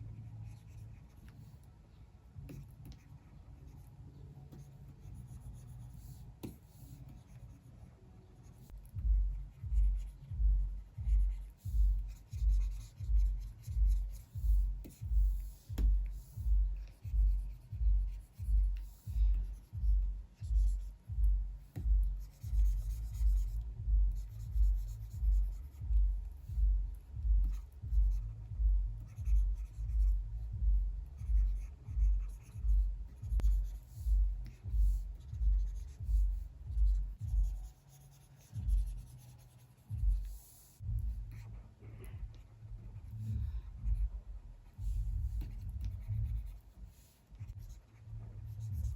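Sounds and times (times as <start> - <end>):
stylus rubbing on pen display: 11.0 - 21.0, 31.2 - 48.9.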